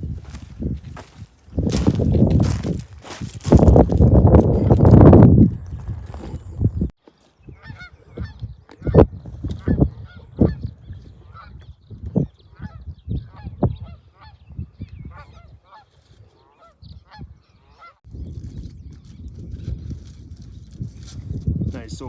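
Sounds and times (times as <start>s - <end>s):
birds calling: 0.2s - 4.8s, 6.5s - 19.2s.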